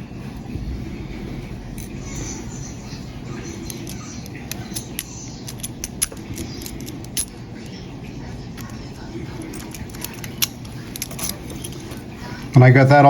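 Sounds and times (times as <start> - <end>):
lock pick scraping in padlock: 3.7 - 7.4, 9.4 - 12.0.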